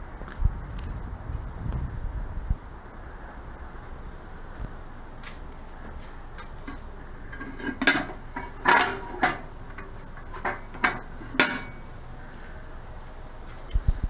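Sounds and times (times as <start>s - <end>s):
metal mailbox lid clanking: 6.4s - 11.9s.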